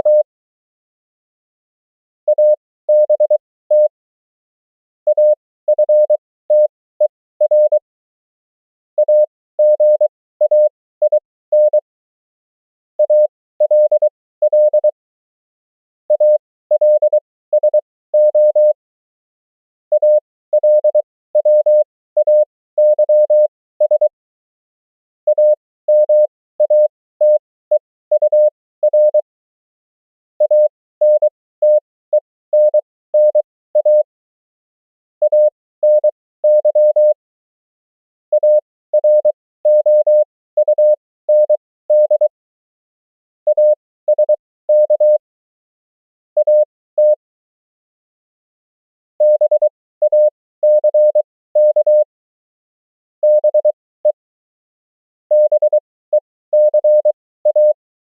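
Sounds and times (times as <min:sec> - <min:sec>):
morse code sidetone: 0:00.0 - 0:00.3, 0:02.3 - 0:03.9, 0:05.1 - 0:06.8, 0:07.4 - 0:07.8, 0:13.0 - 0:15.0, 0:16.1 - 0:18.8, 0:19.9 - 0:24.2, 0:25.3 - 0:29.3, 0:30.4 - 0:34.1, 0:35.2 - 0:37.2, 0:38.3 - 0:42.4, 0:43.5 - 0:45.2, 0:46.4 - 0:47.2, 0:49.2 - 0:52.1, 0:53.2 - 0:54.2, 0:55.3 - 0:57.8.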